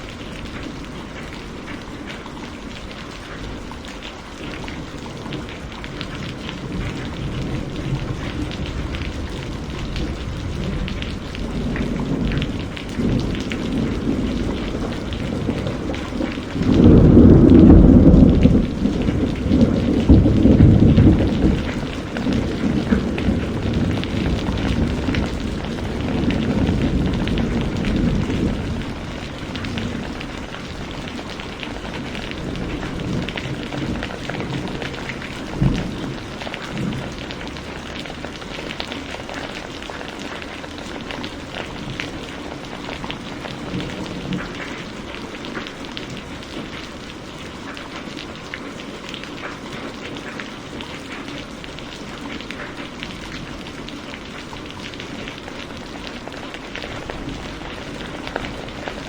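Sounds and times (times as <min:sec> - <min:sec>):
heavy rain falling: 0:00.0 - 0:59.0
low thunder rumble: 0:04.5 - 0:47.3, 0:51.6 - 0:59.0.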